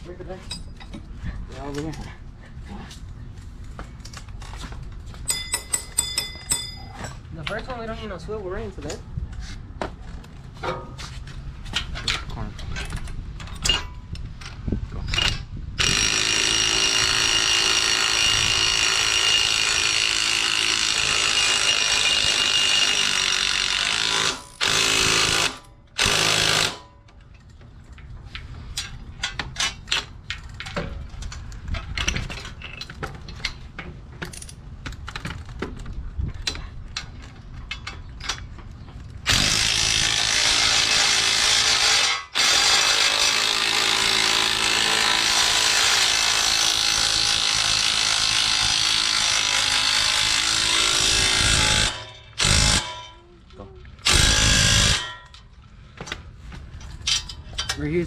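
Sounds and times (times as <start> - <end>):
handheld power tool running: 39.3 - 52.9
clicks and knocks on metal parts: 56.8 - 57.9.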